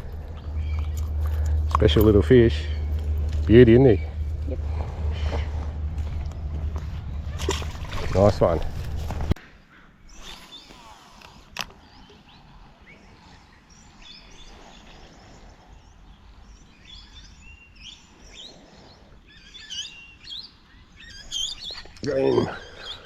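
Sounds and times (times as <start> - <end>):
small birds chirping: 0.0 - 9.0, 9.6 - 23.0
outdoor background noise: 0.0 - 23.0.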